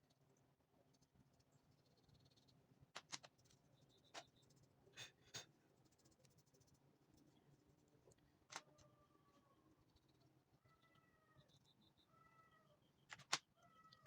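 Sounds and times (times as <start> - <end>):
keyboard clicks and taps: 3.0 - 3.5, 13.1 - 13.5.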